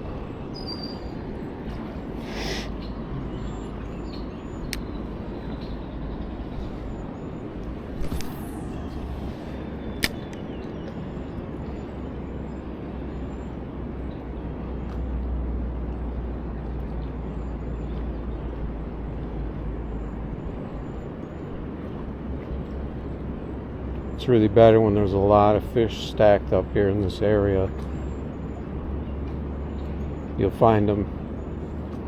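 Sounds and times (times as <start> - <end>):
flowing river water: 0.0 - 32.0
low wind rumble: 0.0 - 32.0
sharp click: 10.0 - 10.4.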